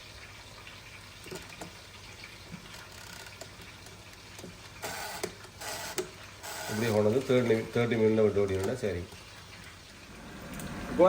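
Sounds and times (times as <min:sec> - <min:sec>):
chicken frying in hot oil: 0:00.0 - 0:11.0.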